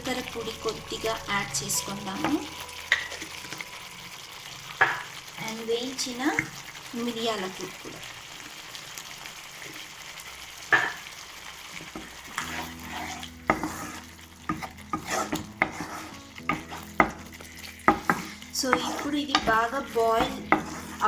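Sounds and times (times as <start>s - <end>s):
gravy sizzling in a pan: 0.0s - 21.0s
utensil scraping and clinking pan: 12.0s - 21.0s.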